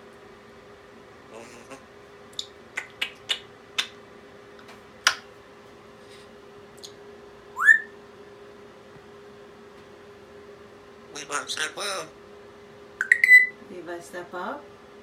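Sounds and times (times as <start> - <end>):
parrot clicking: 2.4 - 4.0
parrot whistle rising in pitch: 7.6 - 7.9, 13.0 - 13.6.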